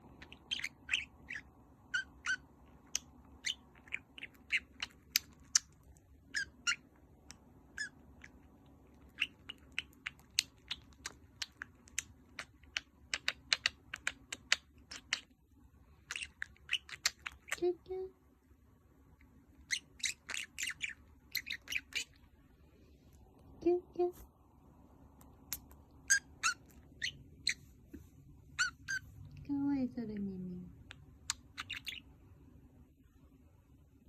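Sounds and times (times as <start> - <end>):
budgerigar chattering: 0.1 - 2.4, 6.3 - 6.9, 19.7 - 22.2, 28.6 - 29.0, 31.3 - 32.0.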